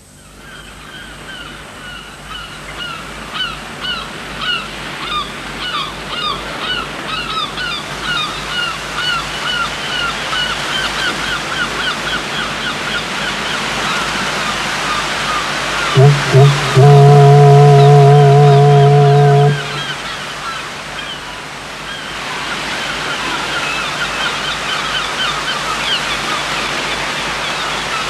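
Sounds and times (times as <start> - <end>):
background hiss: 15.9 - 20.1.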